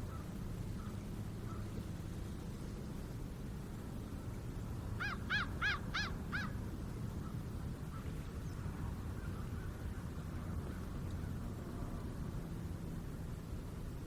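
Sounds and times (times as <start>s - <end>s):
distant traffic rumble: 0.0s - 14.0s.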